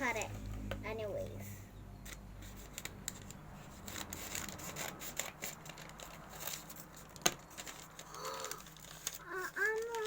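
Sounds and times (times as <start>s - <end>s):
packaging rustling: 2.6s - 10.0s.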